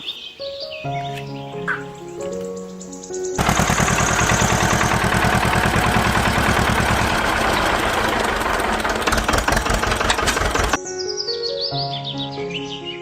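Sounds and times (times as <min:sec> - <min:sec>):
small motor tool chattering: 0:03.4 - 0:10.8.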